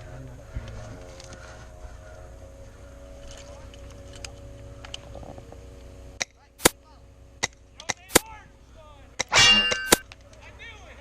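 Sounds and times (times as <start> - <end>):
airsoft gun shots: 8.1 - 8.3, 9.2 - 10.0.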